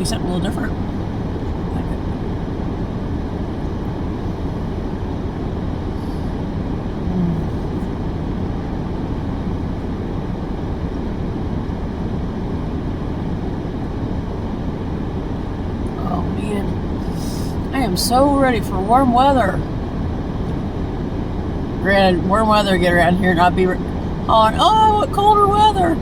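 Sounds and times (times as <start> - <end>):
brief low hum: 0.0 - 12.4
vehicle engine idling: 0.0 - 26.0.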